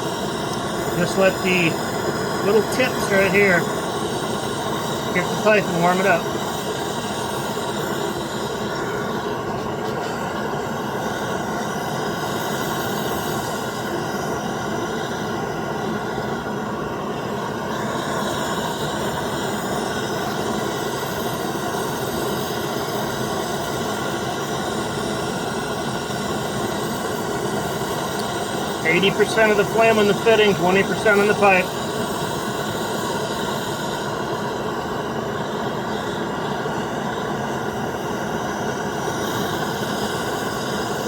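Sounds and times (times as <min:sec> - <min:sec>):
gas torch flame hissing: 0:00.0 - 0:41.0.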